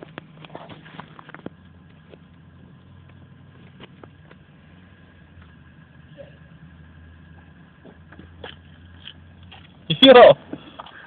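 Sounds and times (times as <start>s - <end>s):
car engine idling: 0.0s - 11.0s.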